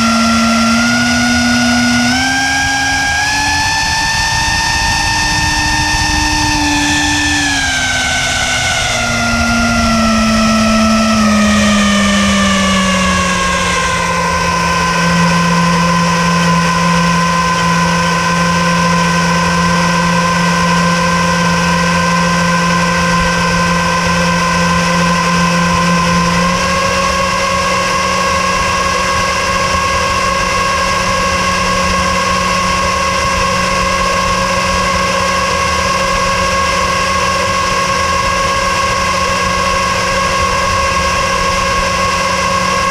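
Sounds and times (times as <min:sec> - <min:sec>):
boat motor running: 0:00.0 - 0:42.9.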